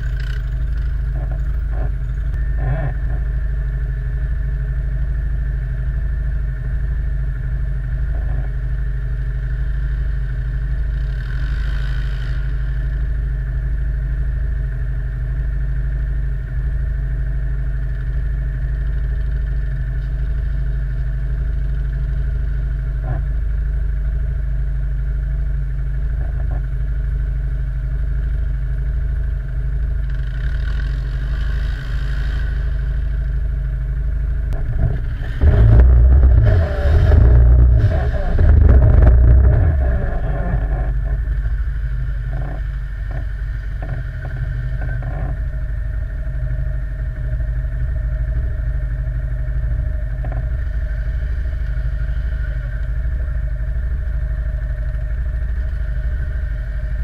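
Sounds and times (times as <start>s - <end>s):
faint clicks and rattles: 0.0s - 3.3s, 49.9s - 50.8s
quad bike engine running: 0.0s - 57.0s.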